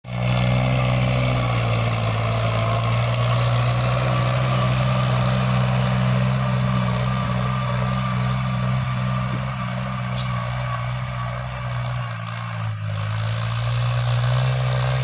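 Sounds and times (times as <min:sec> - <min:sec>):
tractor diesel engine running: 0:00.0 - 0:15.0.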